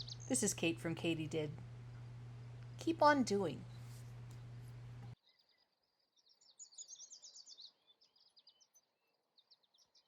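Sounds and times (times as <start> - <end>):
faint bird song: 0.0 - 0.8, 3.6 - 10.0.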